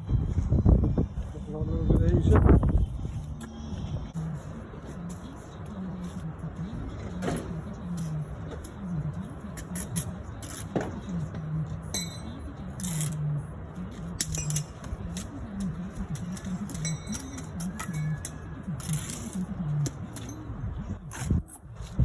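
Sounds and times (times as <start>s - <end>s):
trowel clinking against bricks: 11.9s - 13.2s, 14.2s - 21.7s.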